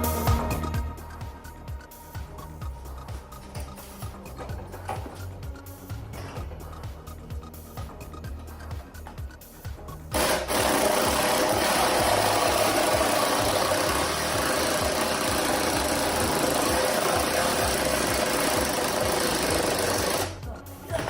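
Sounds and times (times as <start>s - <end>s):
background music with steady beat: 0.0s - 21.0s
power tool cutting metal pipe: 10.1s - 20.3s.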